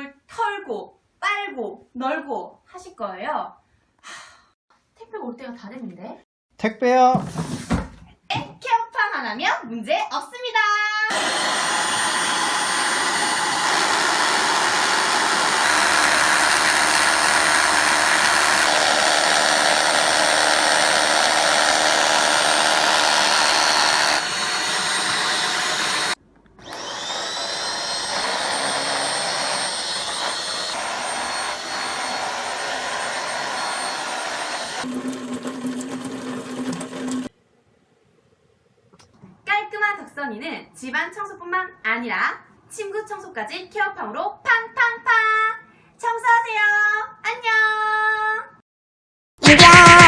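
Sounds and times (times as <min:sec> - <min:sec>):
handheld vacuum cleaner running: 0:11.1 - 0:37.3.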